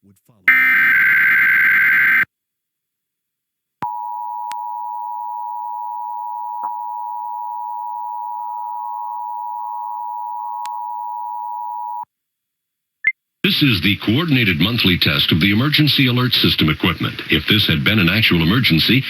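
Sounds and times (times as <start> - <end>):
buzzy digital data squeal: 0.5 - 2.2
two-tone attention signal: 0.5 - 2.3.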